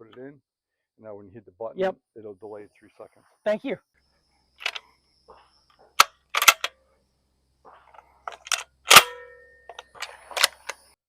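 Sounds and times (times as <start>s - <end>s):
loud metallic clank ringing: 8.9s - 9.8s.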